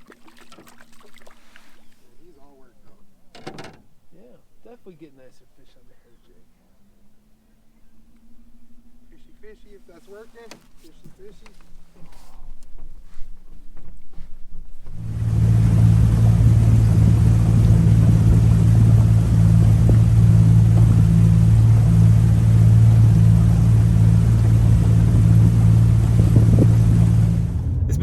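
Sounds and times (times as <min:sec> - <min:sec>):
motor droning: 0:14.8 - 0:28.0
rushing noise: 0:14.9 - 0:28.0.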